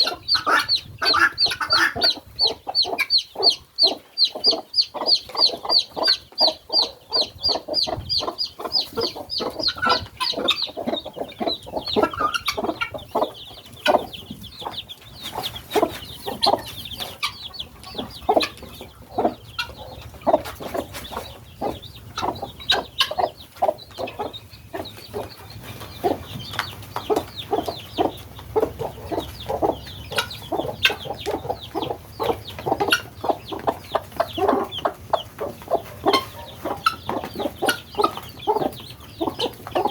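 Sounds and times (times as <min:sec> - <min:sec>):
guineafowl calling harshly: 0:00.0 - 0:14.1, 0:28.6 - 0:39.9.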